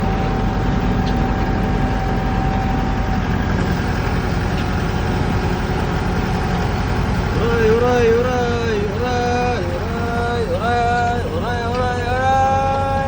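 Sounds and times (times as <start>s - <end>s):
diesel engine idling: 0.0s - 13.0s
thin whine: 0.0s - 13.0s.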